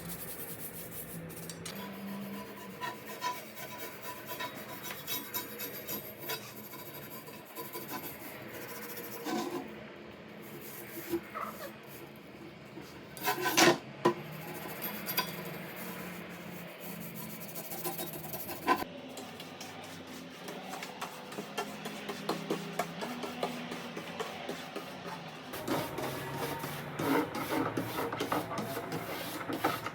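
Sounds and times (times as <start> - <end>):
hand scraping on metal: 20.3 - 29.9.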